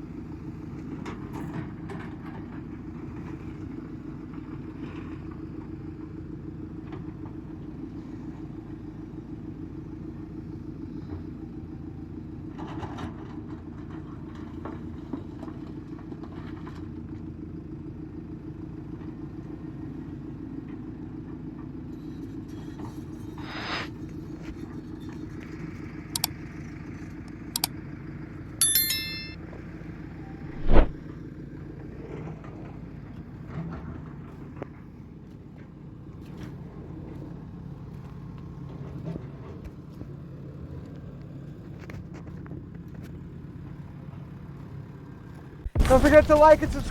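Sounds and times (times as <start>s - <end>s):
diesel engine running: 29.7s - 46.9s.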